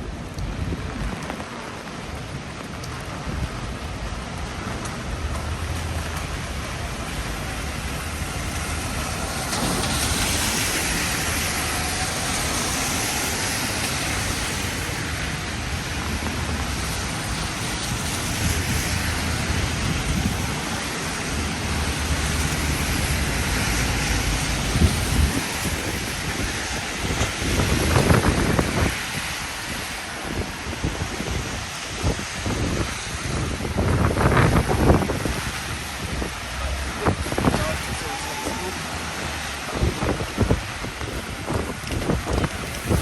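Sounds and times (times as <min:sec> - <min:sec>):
heavy rain on street: 0:00.0 - 0:43.0
passing traffic rumble: 0:00.0 - 0:43.0.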